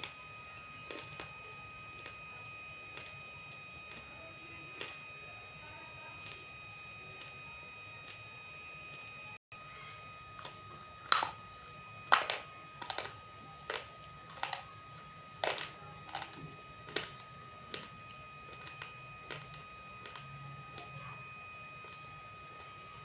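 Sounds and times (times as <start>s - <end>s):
clay crunching with crisp cracks: 10.4s - 14.7s, 15.4s - 20.9s.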